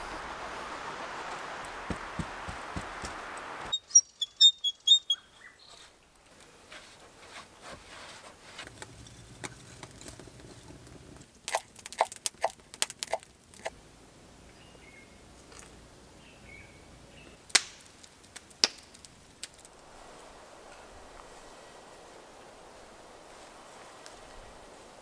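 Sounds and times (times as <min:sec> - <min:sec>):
bird chirping: 0:01.7 - 0:05.9, 0:14.4 - 0:17.4.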